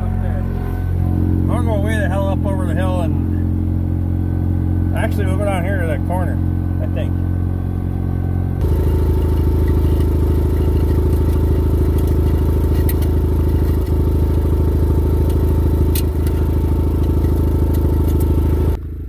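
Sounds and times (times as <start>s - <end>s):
engine running steadily: 0.0s - 19.0s
faint clicks and rattles: 8.6s - 18.7s.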